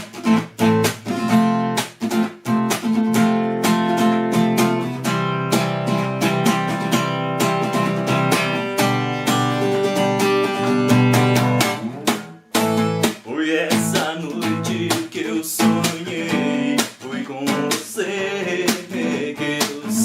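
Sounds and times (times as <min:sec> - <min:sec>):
acoustic guitar strumming: 0:00.0 - 0:20.0.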